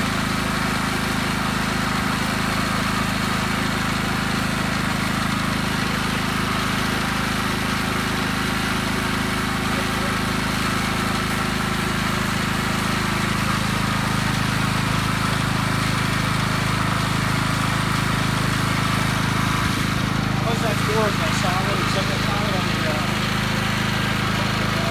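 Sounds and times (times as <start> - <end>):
pressure washer engine running: 0.0 - 24.9.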